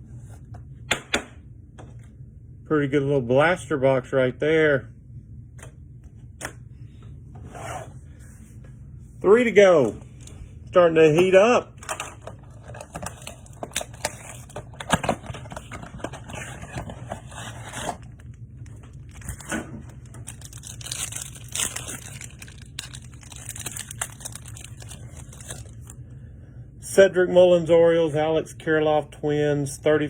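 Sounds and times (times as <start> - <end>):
foil wrapper tearing and crinkling: 12.4 - 26.0.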